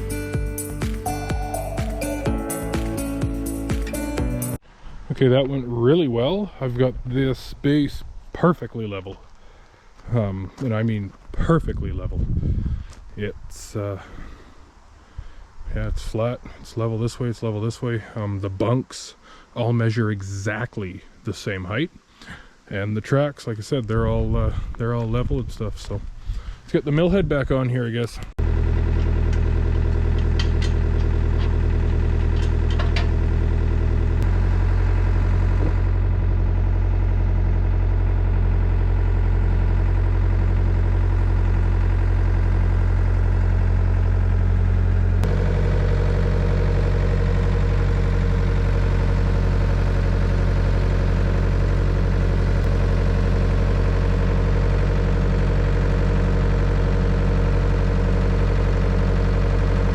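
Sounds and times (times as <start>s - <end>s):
excavator diesel engine running: 0.0s - 4.6s, 28.4s - 59.9s.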